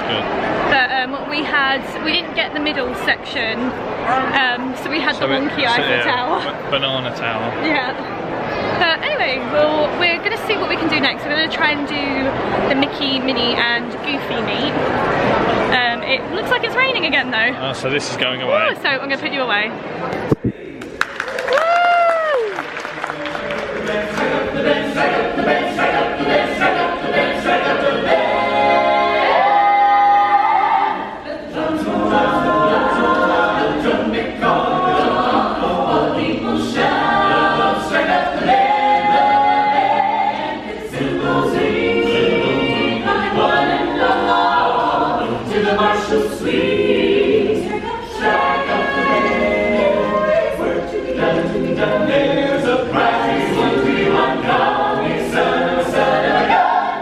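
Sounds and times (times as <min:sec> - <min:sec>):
a cappella choir singing: 0:00.0 - 0:06.4, 0:23.3 - 0:57.0.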